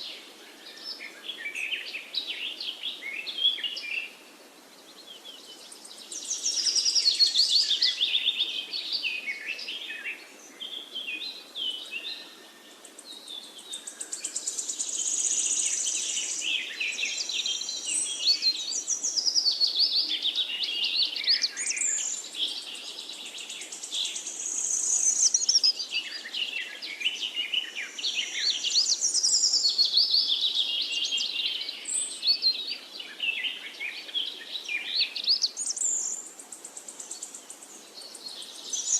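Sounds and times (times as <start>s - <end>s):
faint background hiss: 0.0s - 38.9s
songbirds singing: 0.0s - 38.9s.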